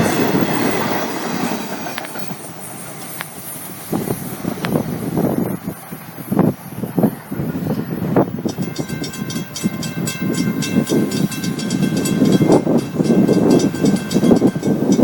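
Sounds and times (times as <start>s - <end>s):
freight train cars rolling: 0.0s - 15.0s
wind: 0.0s - 15.0s
wheel clatter: 8.4s - 15.0s.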